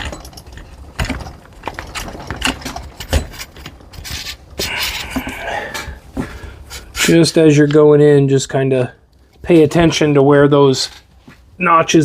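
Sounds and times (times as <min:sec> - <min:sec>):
metal scraping rub: 0:00.0 - 0:06.0, 0:06.6 - 0:07.4.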